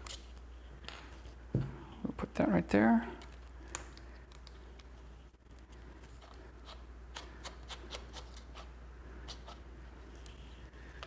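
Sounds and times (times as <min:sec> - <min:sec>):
low steady hum: 0:00.0 - 0:11.0.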